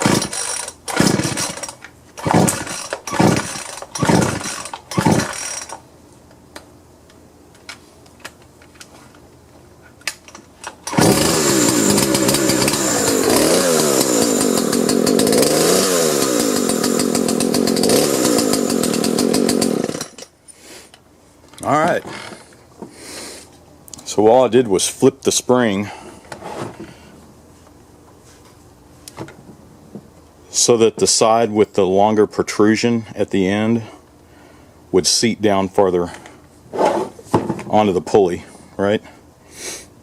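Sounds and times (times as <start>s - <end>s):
chainsaw engine revving: 0.0s - 5.8s, 10.8s - 20.2s
chainsaw starter rope pulls: 0.0s - 5.8s, 10.7s - 20.3s.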